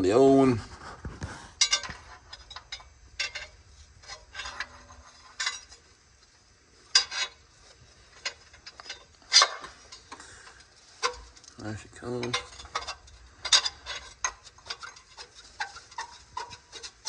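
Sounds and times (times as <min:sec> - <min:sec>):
metallic clanks and clicks: 0:01.6 - 0:06.3, 0:06.9 - 0:17.0.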